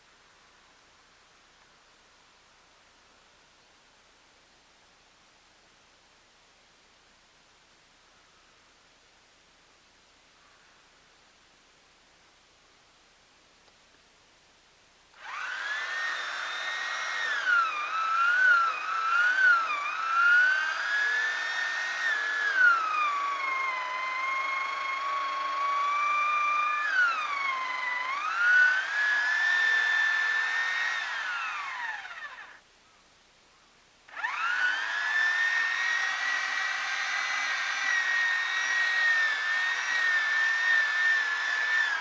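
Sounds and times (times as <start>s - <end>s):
chainsaw cutting a log: 15.2s - 32.6s, 34.1s - 42.0s.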